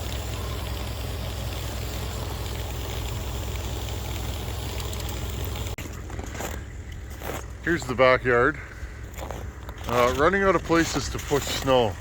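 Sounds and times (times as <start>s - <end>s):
constant rushing noise: 0.0s - 12.0s
engine running with low rumble: 0.0s - 12.0s.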